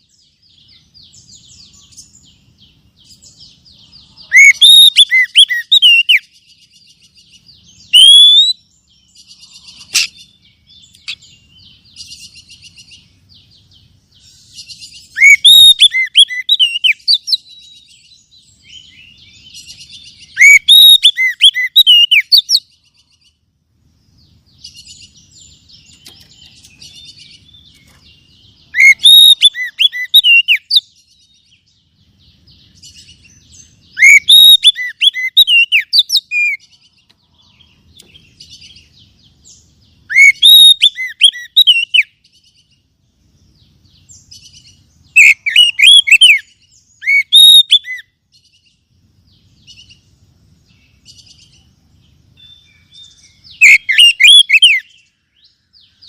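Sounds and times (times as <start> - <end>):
soft bird twittering: 0.0 - 56.0
songbird whistling and chattering: 3.0 - 22.7, 24.6 - 31.3, 32.6 - 36.8, 37.9 - 42.5, 44.0 - 48.6, 52.4 - 56.0.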